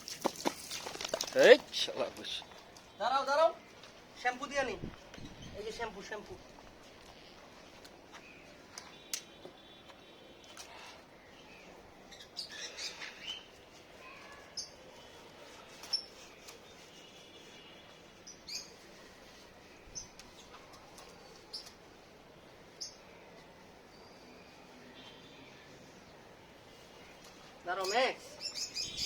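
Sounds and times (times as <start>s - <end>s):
birds chirping: 15.8s - 21.9s, 26.7s - 29.0s.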